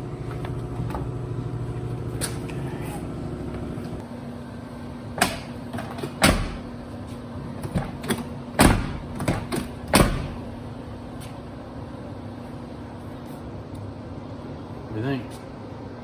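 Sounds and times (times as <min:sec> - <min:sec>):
steady low hum: 0:00.0 - 0:16.0
car door clunking shut: 0:05.2 - 0:06.7.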